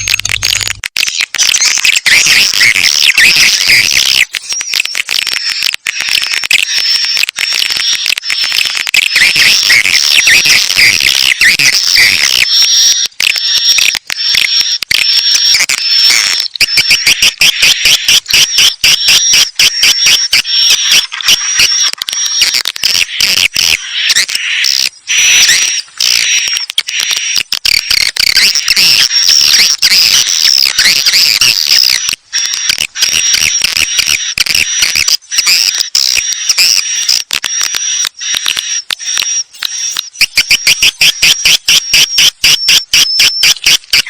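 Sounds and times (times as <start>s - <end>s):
swiftlets twittering and chirping: 0.0s - 44.0s.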